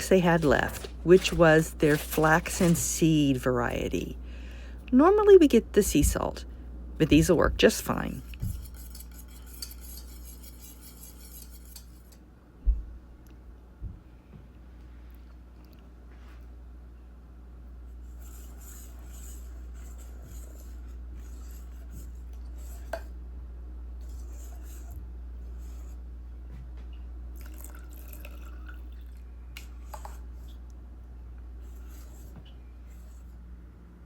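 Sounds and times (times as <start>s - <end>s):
kitchen handling sounds: 0.0s - 3.6s
steady low hum: 0.0s - 34.0s.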